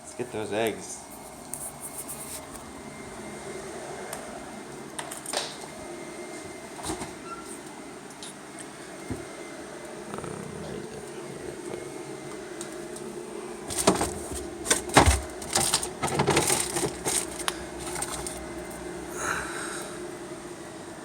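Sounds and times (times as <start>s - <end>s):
steady room hum: 0.0s - 21.0s
knocks and clicks of objects handled: 13.7s - 18.4s.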